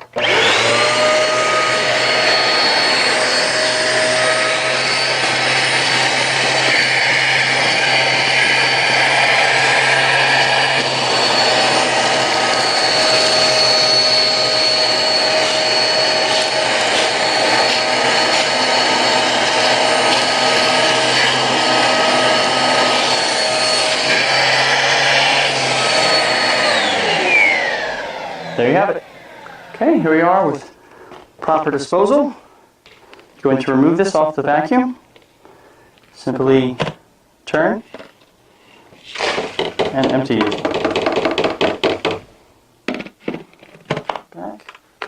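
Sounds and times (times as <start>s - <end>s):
vacuum motor whine: 0.0s - 30.5s.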